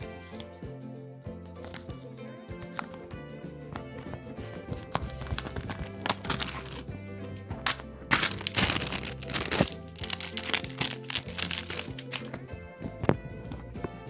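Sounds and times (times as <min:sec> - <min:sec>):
background music: 0:00.0 - 0:14.0
paper crinkling and rustling: 0:01.6 - 0:01.9, 0:02.6 - 0:03.1, 0:03.8 - 0:06.9, 0:07.6 - 0:13.2.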